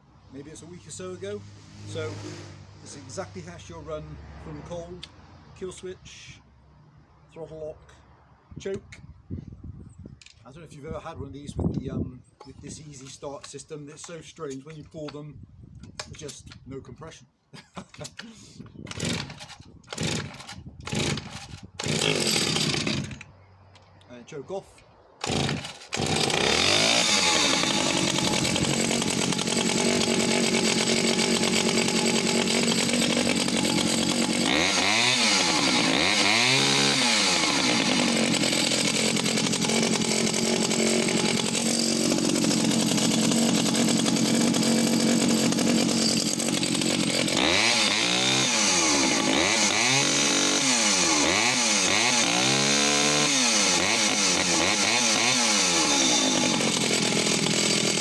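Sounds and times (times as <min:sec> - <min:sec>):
chainsaw idling and revving: 0:00.4 - 0:05.1, 0:18.9 - 0:23.3, 0:25.2 - 0:58.0.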